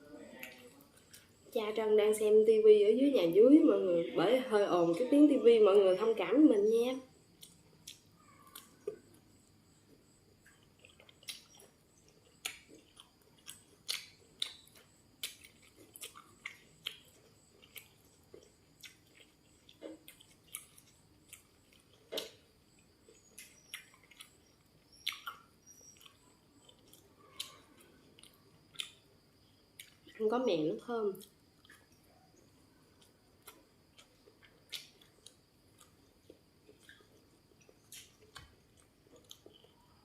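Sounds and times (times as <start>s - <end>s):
chewing crisp food: 7.1s - 30.2s, 31.1s - 40.0s.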